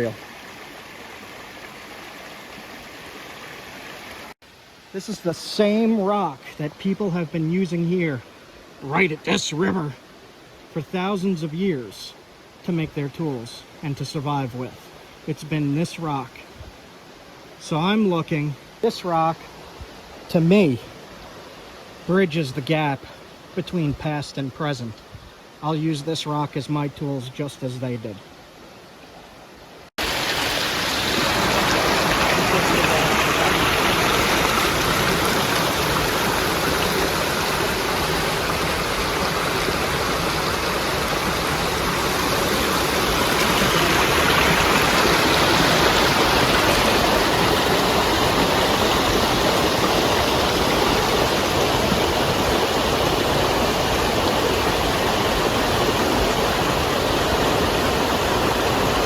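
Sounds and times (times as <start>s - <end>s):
creek water rushing: 0.0s - 59.0s.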